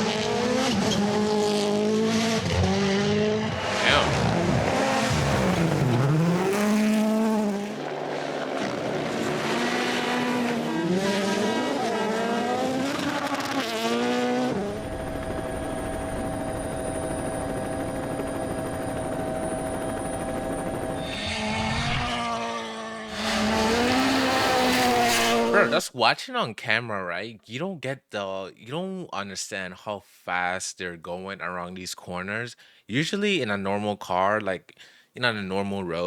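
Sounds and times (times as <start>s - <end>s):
rally car engine revving: 0.0s - 15.0s, 20.9s - 25.8s.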